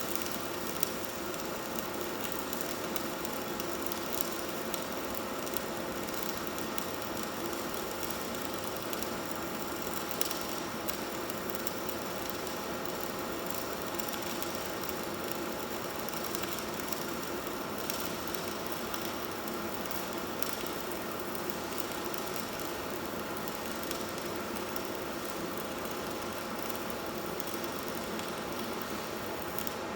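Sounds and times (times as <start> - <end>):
electric arc welding crackling: 13.5 - 29.9.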